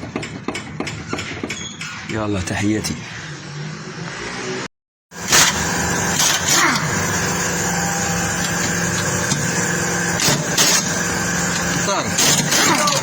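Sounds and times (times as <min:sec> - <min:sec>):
sharp knocks: 0:00.0 - 0:02.4.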